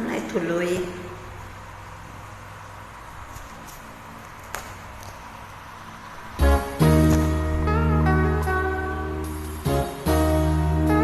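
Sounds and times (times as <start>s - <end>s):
steady bass: 6.3s - 11.0s
guitar-like chords: 6.4s - 11.0s.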